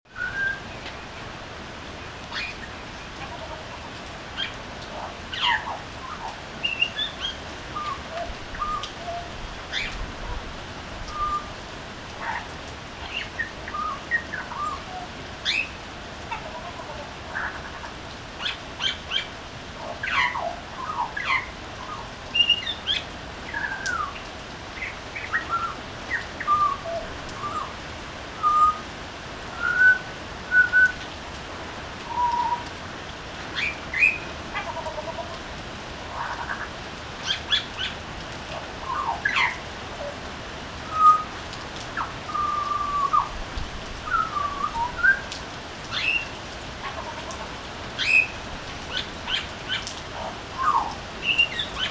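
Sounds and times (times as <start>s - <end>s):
bird singing whistled notes: 0.1s - 0.7s, 11.1s - 11.5s, 28.4s - 28.8s, 29.6s - 31.0s, 40.9s - 41.3s, 44.1s - 45.3s.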